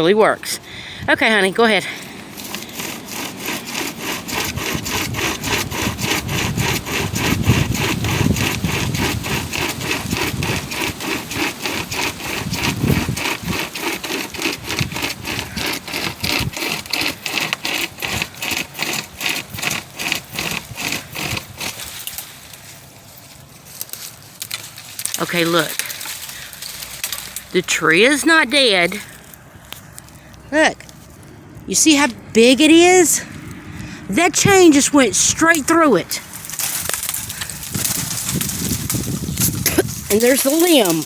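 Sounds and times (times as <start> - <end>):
hand saw chain cutting tree limb: 0.0 - 31.2, 34.2 - 41.0.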